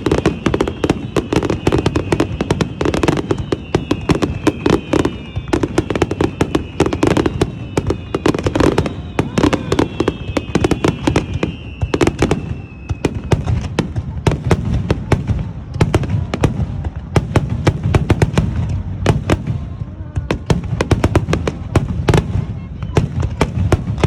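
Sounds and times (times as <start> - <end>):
falling firework whistles: 0.0 - 14.4
fireworks cracking: 0.0 - 24.0.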